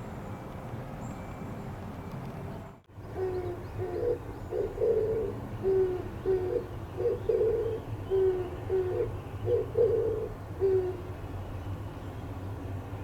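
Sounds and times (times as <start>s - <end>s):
dove cooing: 3.1s - 11.1s.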